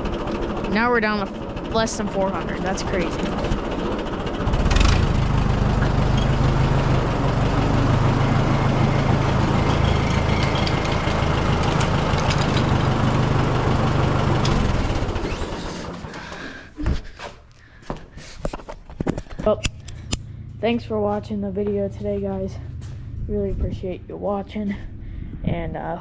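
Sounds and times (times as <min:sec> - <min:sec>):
tractor engine idling: 0:00.0 - 0:16.8.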